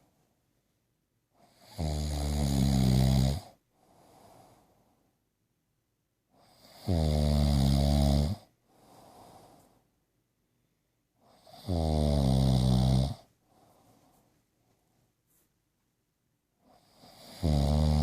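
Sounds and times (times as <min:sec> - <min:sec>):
person snoring: 0:01.4 - 0:04.6, 0:06.4 - 0:09.7, 0:11.2 - 0:13.3, 0:16.7 - 0:18.0
quiet breathing: 0:03.0 - 0:05.4, 0:08.0 - 0:12.0, 0:12.6 - 0:15.6.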